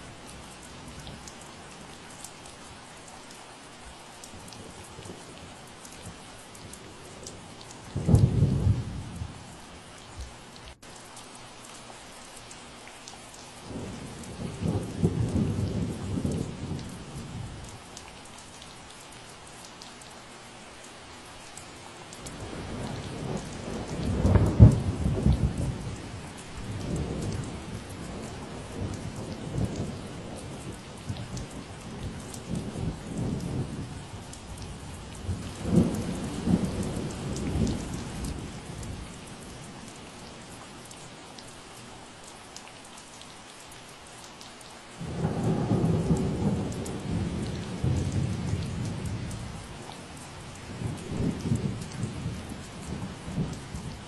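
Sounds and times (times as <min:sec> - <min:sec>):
steady rain: 0:00.0 - 0:54.0
rolling thunder: 0:22.4 - 0:26.0, 0:35.2 - 0:39.1, 0:45.0 - 0:49.8, 0:50.7 - 0:54.0.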